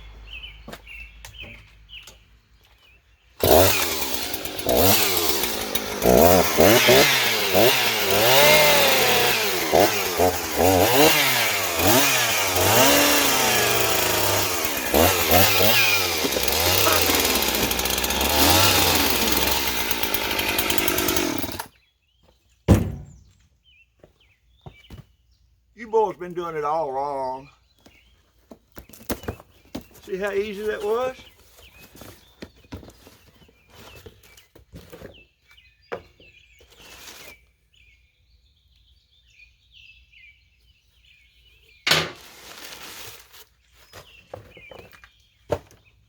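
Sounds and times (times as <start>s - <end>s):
chainsaw revving: 3.4s - 21.7s
thump: 22.7s - 23.2s.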